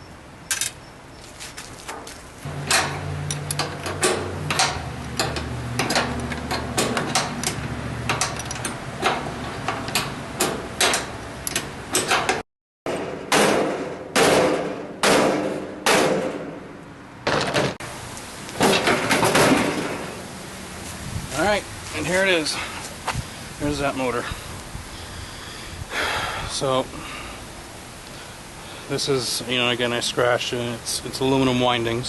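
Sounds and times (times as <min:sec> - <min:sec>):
metal clattering and knocking: 0:02.5 - 0:16.5, 0:18.6 - 0:20.1.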